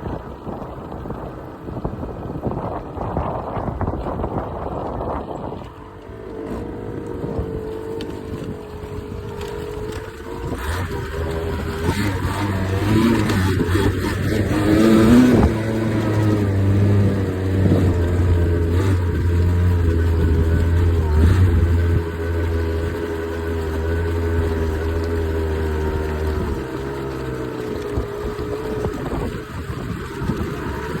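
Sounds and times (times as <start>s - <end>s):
two-stroke engine revving: 5.8s - 31.0s.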